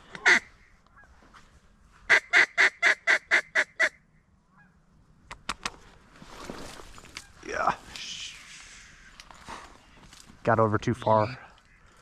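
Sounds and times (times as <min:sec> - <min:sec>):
duck quacks: 0:00.1 - 0:00.5
sharp clicks: 0:05.2 - 0:05.8.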